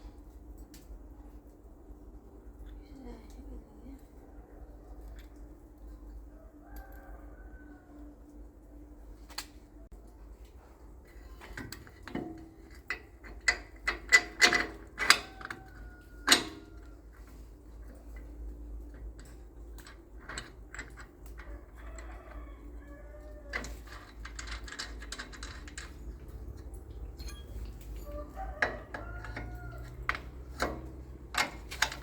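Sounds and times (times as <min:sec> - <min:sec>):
hand tools clinking on metal: 0:23.3 - 0:32.0.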